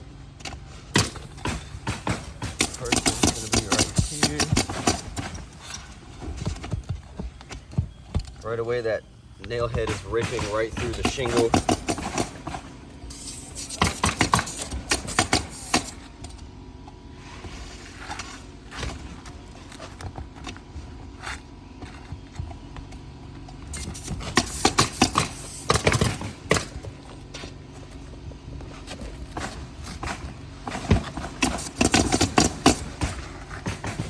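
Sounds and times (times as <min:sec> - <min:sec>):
metal bar prying nails: 0:01.0 - 0:05.8, 0:09.8 - 0:16.0.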